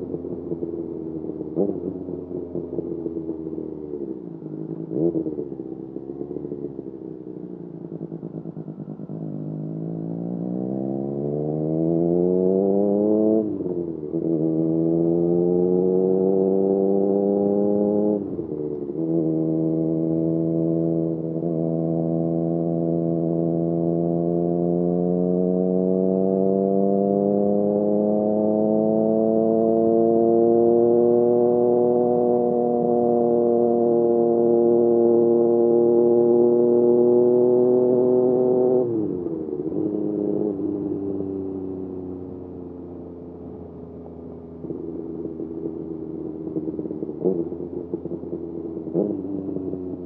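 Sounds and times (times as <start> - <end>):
motorcycle engine accelerating hard: 0.0 - 50.0.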